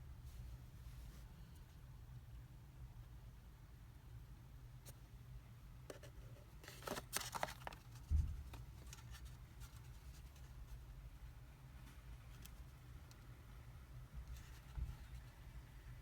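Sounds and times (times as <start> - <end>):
packaging rustling and clicking: 6.6 - 9.2.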